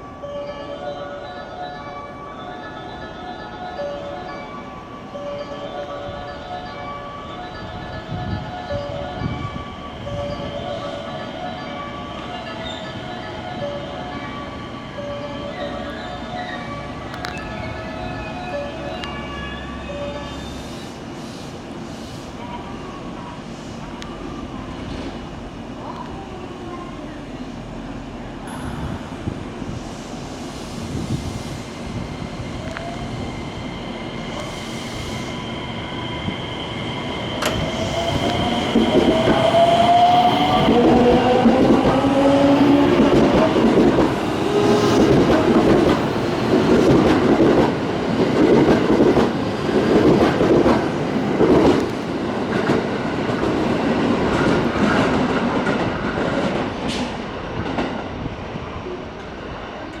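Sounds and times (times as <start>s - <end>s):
train wheels over rail joints: 33.8s - 58.4s.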